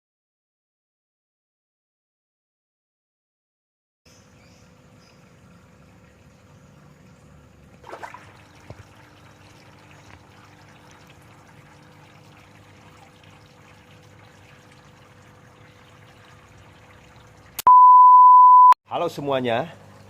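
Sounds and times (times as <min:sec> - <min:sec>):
faint trickle of water: 0:04.3 - 0:17.6.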